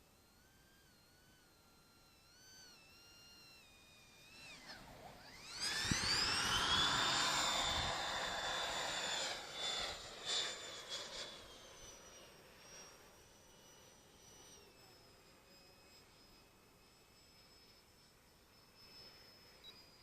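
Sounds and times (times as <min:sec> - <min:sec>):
electric ducted fan whining: 0:00.0 - 0:10.7
rush of air: 0:05.7 - 0:09.9.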